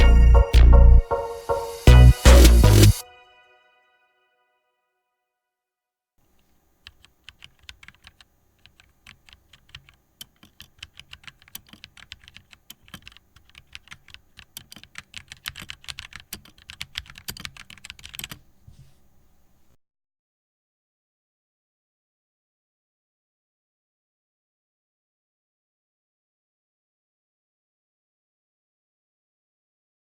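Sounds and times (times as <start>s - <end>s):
mechanical keyboard key clacks: 6.8s - 18.4s.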